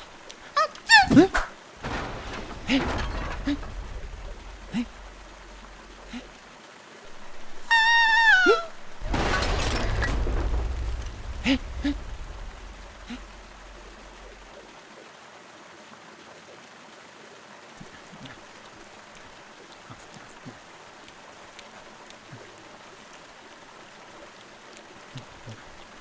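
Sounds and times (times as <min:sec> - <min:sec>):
loud noisy commotion: 0:01.8 - 0:06.3, 0:08.7 - 0:14.4.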